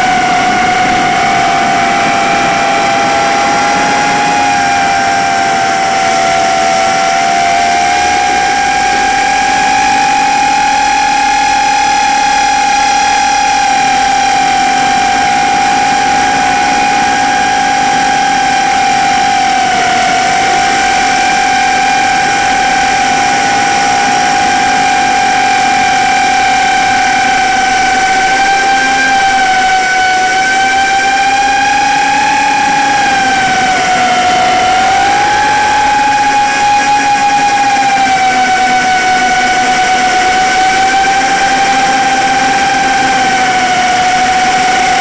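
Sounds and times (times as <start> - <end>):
drone motors whining: 0.0 - 45.0.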